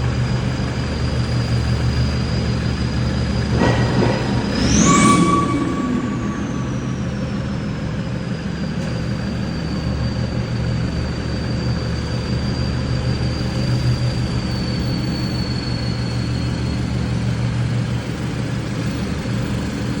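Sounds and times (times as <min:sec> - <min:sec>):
high thin whine: 0:03.4 - 0:08.5.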